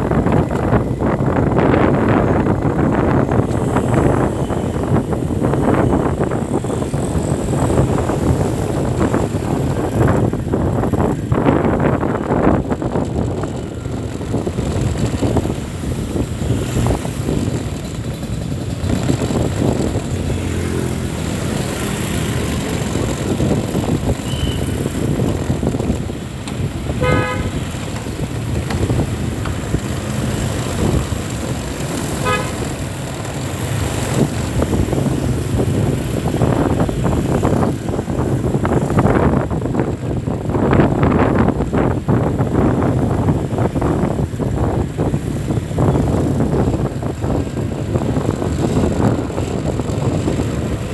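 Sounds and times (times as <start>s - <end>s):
traffic engines running: 0.0s - 50.9s
vehicle horn tooting: 27.0s - 27.8s, 32.2s - 32.8s.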